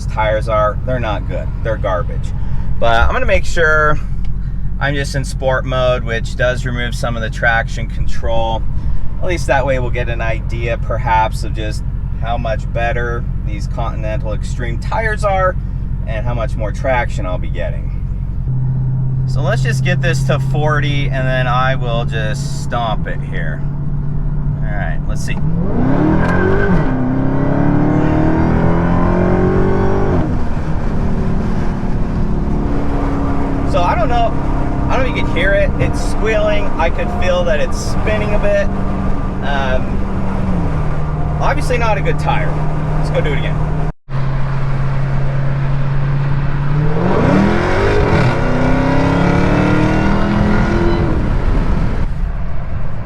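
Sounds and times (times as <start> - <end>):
car engine accelerating hard: 0.0 - 53.0
tires squealing: 25.4 - 53.0.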